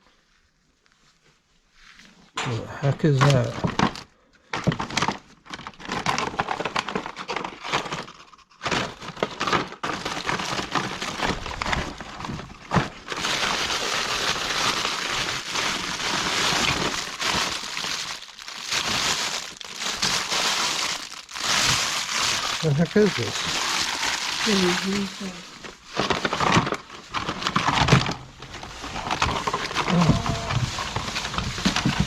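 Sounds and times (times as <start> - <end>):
plastic crinkling and rustling: 3.0 - 32.0
knocks and clatters: 26.0 - 32.0.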